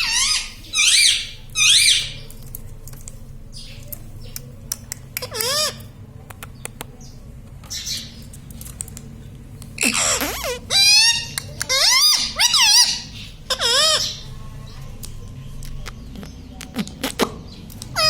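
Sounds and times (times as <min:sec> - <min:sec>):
parrot squawking: 0:00.0 - 0:02.2, 0:05.2 - 0:05.9, 0:09.8 - 0:14.3.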